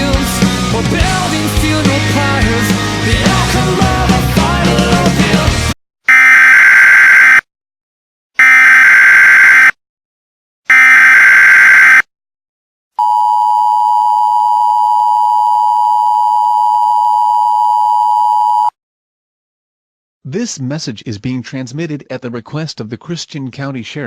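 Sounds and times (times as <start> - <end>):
harsh two-tone attention signal: 6.1 - 7.4, 8.4 - 9.7, 10.7 - 12.0
screeching digital data tones: 10.7 - 12.0.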